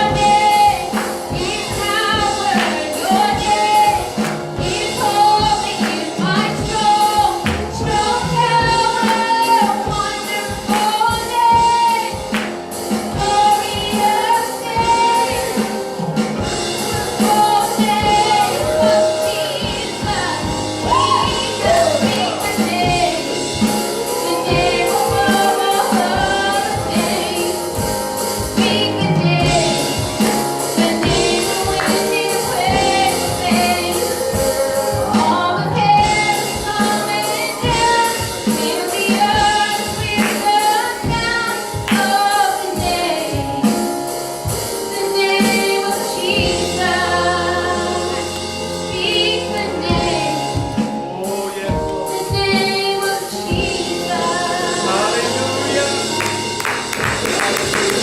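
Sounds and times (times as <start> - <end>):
female singing gospel: 0.0 - 56.6
backing singers: 0.0 - 58.0
band with steady drum beat: 0.0 - 58.0.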